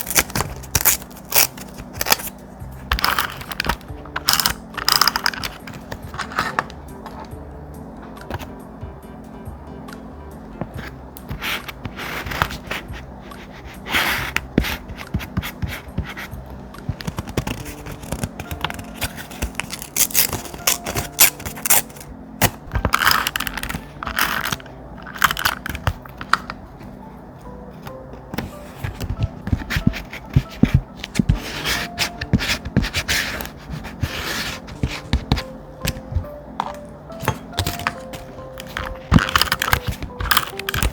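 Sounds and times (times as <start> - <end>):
faint background music: 0.0 - 40.9
thick paper rustling: 28.4 - 36.1.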